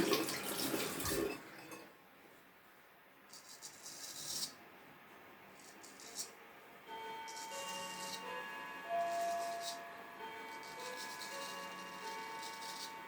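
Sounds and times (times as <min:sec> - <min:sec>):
soft dry scraping: 0:03.3 - 0:04.6, 0:05.5 - 0:06.4, 0:10.5 - 0:13.0.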